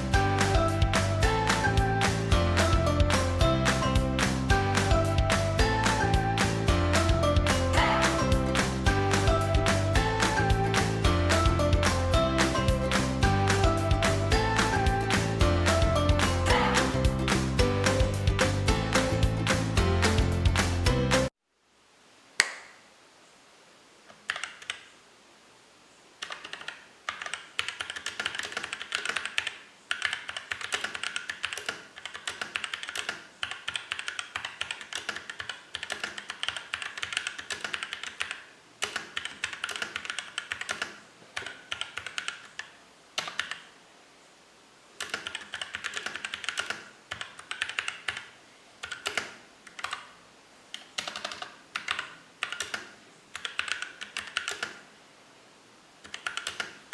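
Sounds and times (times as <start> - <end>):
mechanical keyboard typing: 24.3 - 24.8, 26.2 - 43.6, 45.0 - 50.1, 50.7 - 54.8, 56.0 - 56.9.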